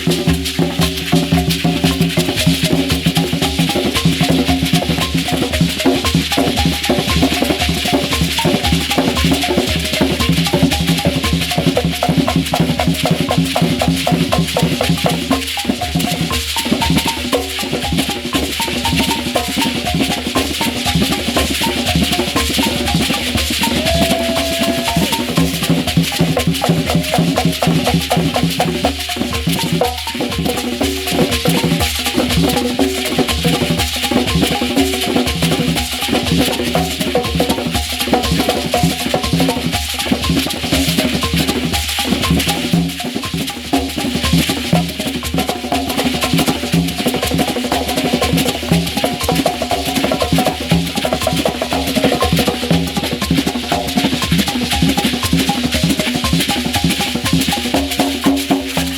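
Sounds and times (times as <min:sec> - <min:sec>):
drums: 0:00.0 - 0:58.9
rattling shakers: 0:00.0 - 0:58.9.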